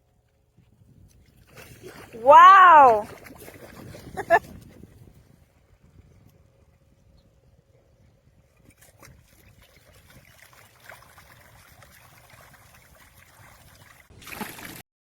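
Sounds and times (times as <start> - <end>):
water trickling and splashing: 0.9 - 5.5, 8.4 - 14.8.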